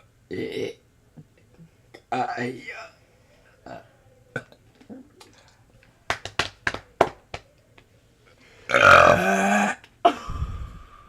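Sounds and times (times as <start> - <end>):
loud burp: 0.3 - 0.8, 8.7 - 9.8.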